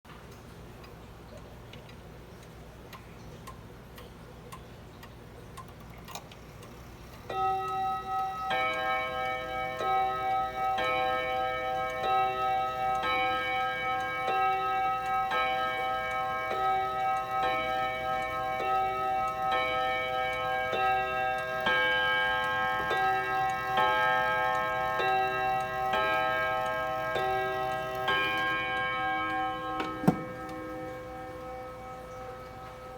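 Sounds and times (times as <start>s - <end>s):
wall clock ticking: 0.8s - 32.9s
clock chime melody: 7.1s - 32.9s.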